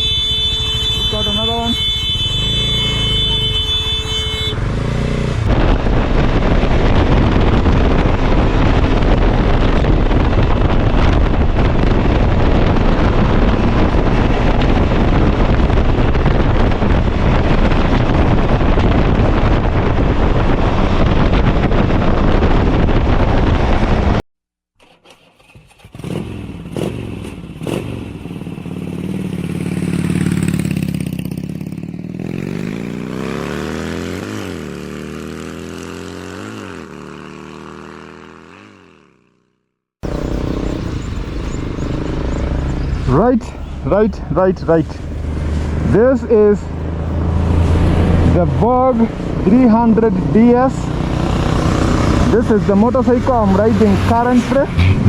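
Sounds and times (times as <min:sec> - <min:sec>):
steady horn-like tone: 0:00.0 - 0:05.0
motorcycle engine revving: 0:00.0 - 0:23.8, 0:24.8 - 0:55.0
wind rushing over microphone: 0:04.6 - 0:24.2, 0:40.0 - 0:55.0.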